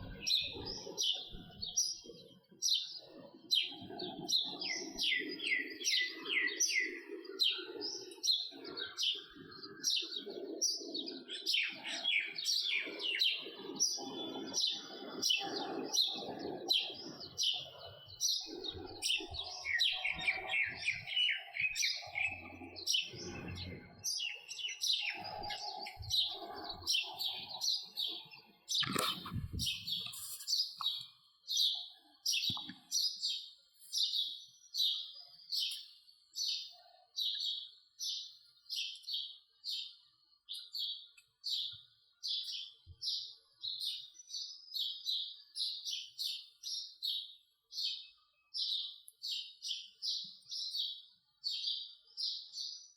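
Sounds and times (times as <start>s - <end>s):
sparrow chirping: 0.0s - 52.9s
other bird calls: 8.3s - 31.7s.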